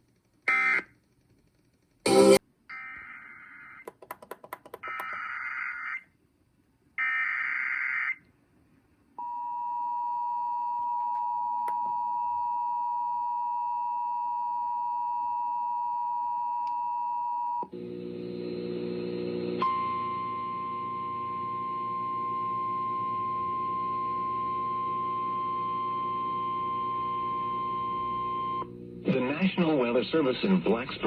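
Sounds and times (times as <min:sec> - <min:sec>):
steady attention tone: 0:19.6 - 0:29.9.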